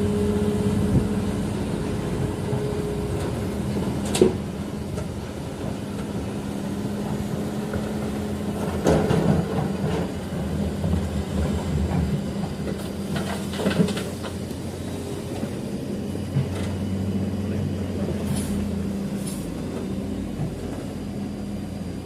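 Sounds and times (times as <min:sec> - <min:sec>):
diesel engine running: 0:00.0 - 0:22.0.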